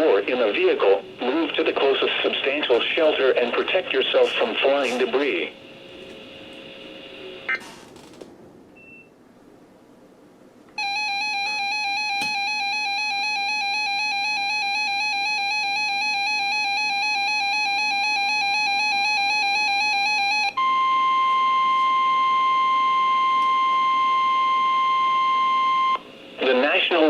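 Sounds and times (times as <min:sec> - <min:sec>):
steady warning alarm tone: 0:10.8 - 0:26.1.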